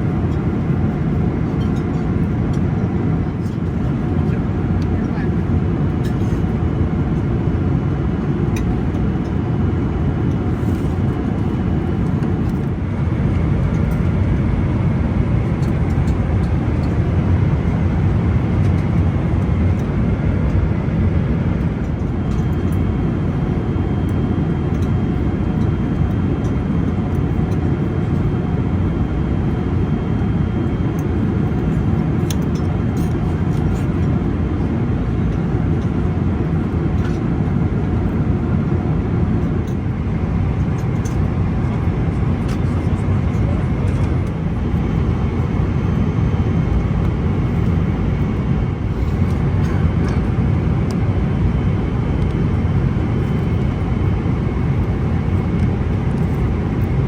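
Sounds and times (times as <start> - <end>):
airflow and engine drone: 0.0 - 57.0.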